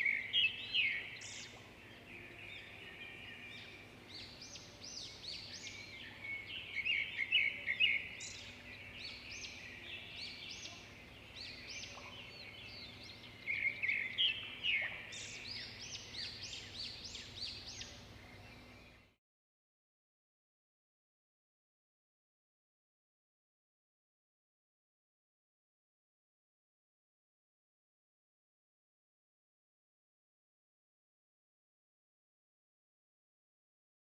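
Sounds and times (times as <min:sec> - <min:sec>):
songbirds chirping: 0:00.0 - 0:19.2.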